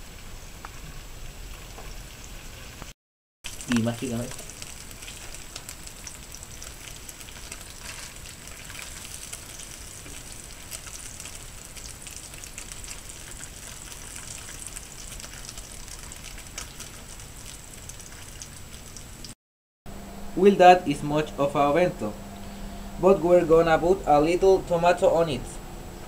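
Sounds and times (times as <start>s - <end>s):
sausages sizzling in oil: 0.0s - 2.9s, 3.5s - 19.4s.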